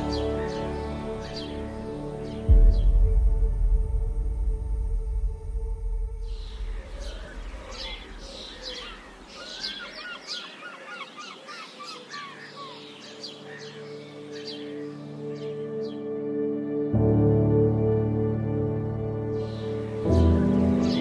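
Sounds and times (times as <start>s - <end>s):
birds chirping and calling: 0.0s - 2.9s, 6.3s - 16.1s, 19.3s - 21.0s.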